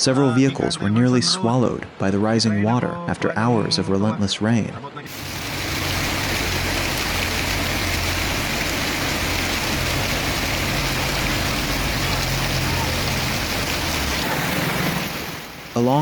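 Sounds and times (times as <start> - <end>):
low engine hum: 5.1 - 15.2
floodwater rushing: 5.1 - 16.0
rain: 5.1 - 16.0.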